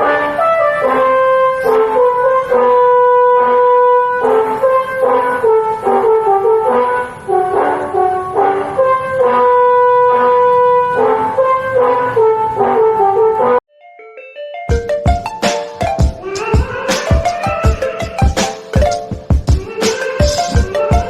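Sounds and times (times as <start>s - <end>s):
bus air horns playing a tune: 0.0s - 13.6s.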